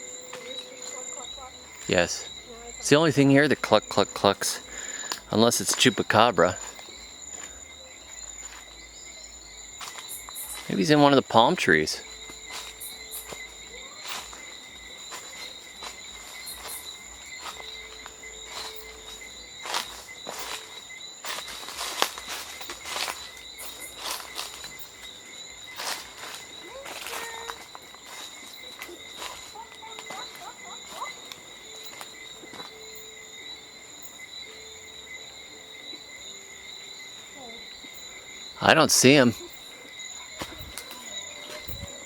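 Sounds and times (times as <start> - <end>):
insects trilling: 0.0 - 42.0
footsteps through brush: 6.5 - 9.1, 9.7 - 11.0, 12.0 - 33.0, 39.0 - 42.0.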